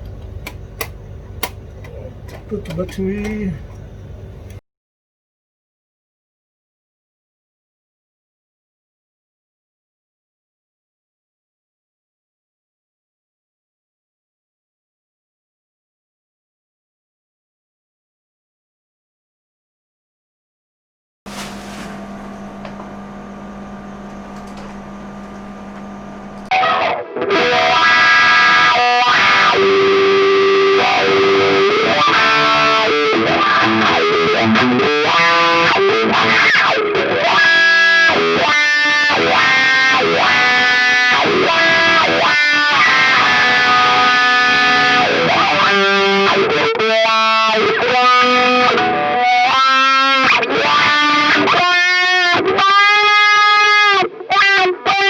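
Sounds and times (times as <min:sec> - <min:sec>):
steady hum: 0:00.0 - 0:04.6, 0:21.3 - 0:26.5
distorted electric guitar with wah: 0:26.5 - 0:55.0.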